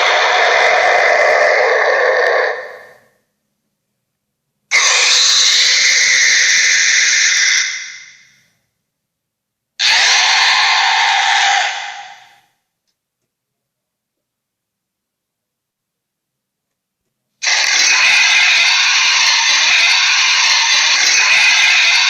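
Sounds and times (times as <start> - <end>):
monster screeching shrieks: 0.0 - 3.0, 4.7 - 8.4, 9.8 - 12.5, 17.4 - 22.0.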